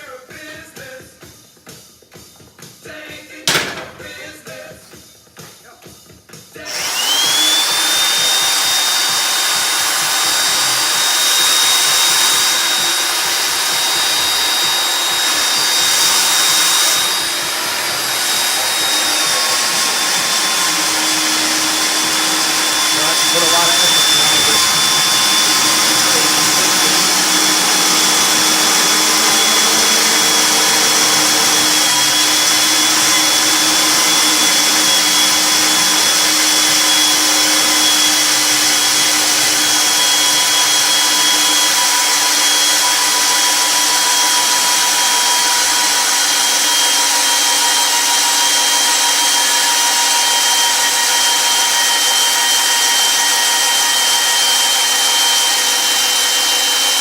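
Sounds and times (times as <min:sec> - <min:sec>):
drill boring through steel: 0:06.6 - 0:57.0.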